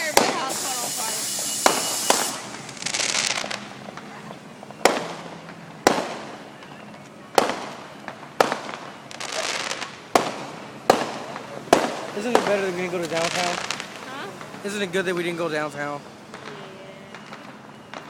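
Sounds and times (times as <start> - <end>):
fireworks bangs: 0.0 - 18.0
fireworks crackling: 0.0 - 18.0.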